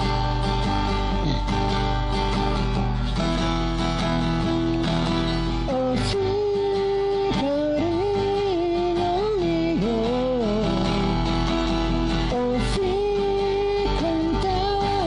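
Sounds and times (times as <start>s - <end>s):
bass: 0.0s - 6.0s
strummed guitar chords: 0.0s - 15.0s.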